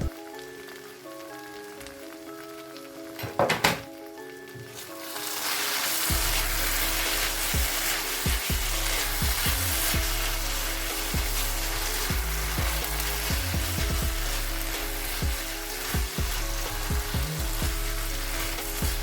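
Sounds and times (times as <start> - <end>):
food sizzling in a pan: 0.0 - 19.0.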